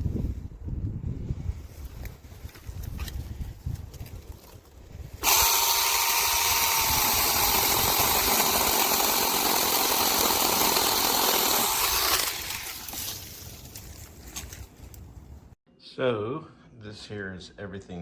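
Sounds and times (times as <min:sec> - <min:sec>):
mini chainsaw whining: 0:05.2 - 0:13.0.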